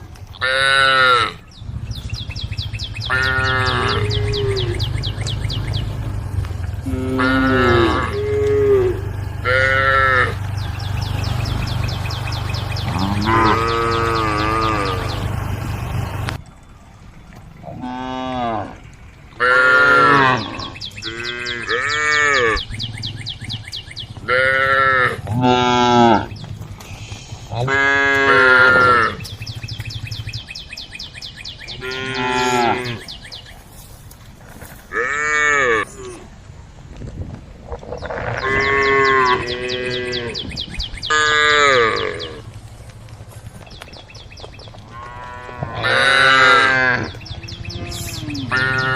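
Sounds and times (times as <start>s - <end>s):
high chirps: 2.0s - 16.4s
cattle mooing: 3.1s - 16.4s, 19.4s - 22.7s, 24.2s - 26.3s, 27.5s - 29.3s, 31.8s - 33.1s, 34.9s - 36.2s, 38.0s - 40.5s, 41.1s - 42.4s, 44.9s - 48.9s.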